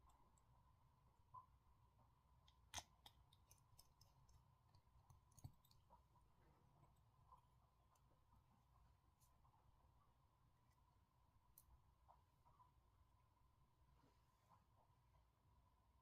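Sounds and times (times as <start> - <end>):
faint steady tone: 0.0 - 16.0.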